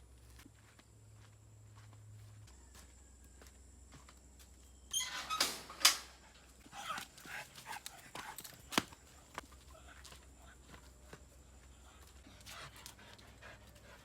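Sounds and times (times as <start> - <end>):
dog barking and yipping: 6.6 - 8.8.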